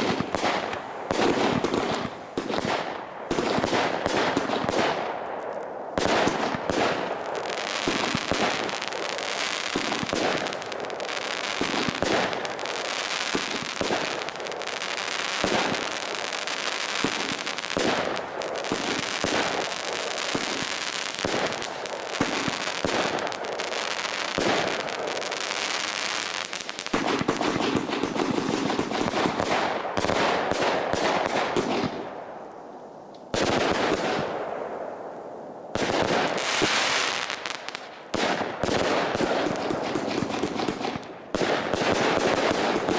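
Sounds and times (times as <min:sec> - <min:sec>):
fireworks shots and bangs: 0:00.0 - 0:32.2, 0:33.3 - 0:35.0, 0:35.7 - 0:42.9
fireworks crackling: 0:00.0 - 0:42.9.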